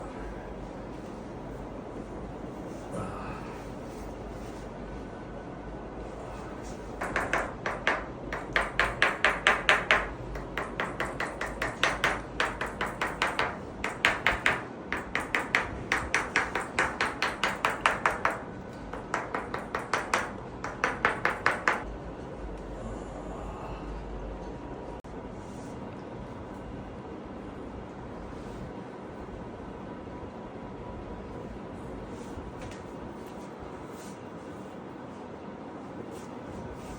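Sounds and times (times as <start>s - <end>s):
hammer tool tapping rapidly: 7.0s - 21.9s.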